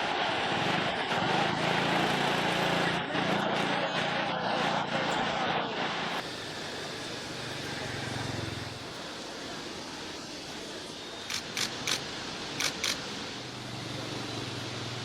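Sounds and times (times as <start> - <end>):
short sharp clicks: 12.6 - 13.0.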